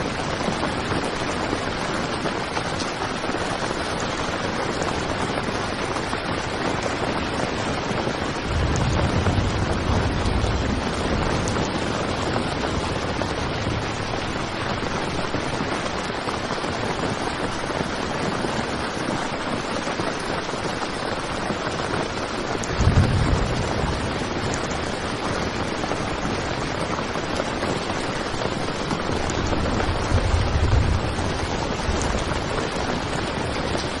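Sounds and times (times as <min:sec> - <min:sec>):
heavy rain on a tent: 0:00.0 - 0:34.0
low rumble: 0:08.4 - 0:15.1, 0:22.7 - 0:24.6, 0:29.5 - 0:33.1.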